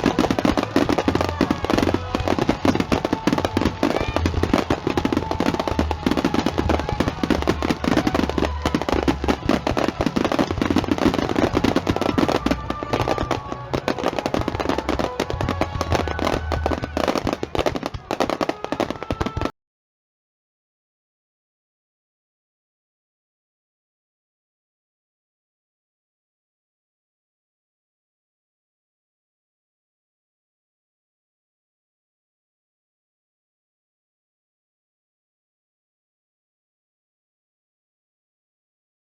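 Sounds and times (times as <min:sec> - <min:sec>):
fireworks crackling: 0:00.0 - 0:19.5.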